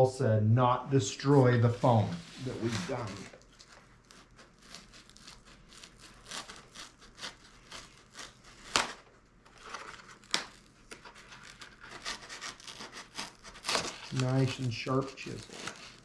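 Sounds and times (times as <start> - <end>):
wood crackling and tearing: 2.4 - 16.0
sharp wood cracks: 4.6 - 9.1, 9.7 - 16.0.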